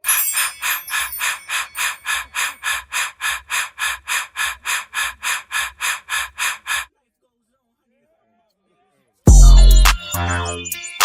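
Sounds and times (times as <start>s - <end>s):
rhythmic hissing pulses: 0.0s - 6.9s.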